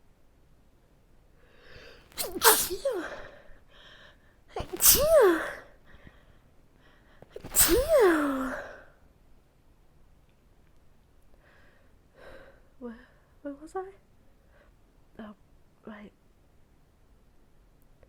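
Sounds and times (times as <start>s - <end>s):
breath drawn in: 1.6s - 3.4s, 4.6s - 5.6s, 7.4s - 8.7s
person sneezing: 1.8s - 3.4s, 4.6s - 5.7s, 7.4s - 8.8s.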